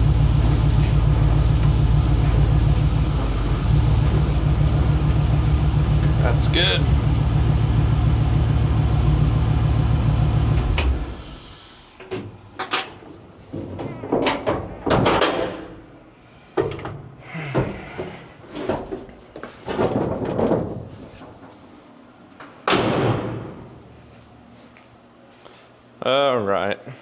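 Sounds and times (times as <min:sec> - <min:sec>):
knocks and clatter of handling: 0:12.0 - 0:15.8, 0:16.5 - 0:21.7.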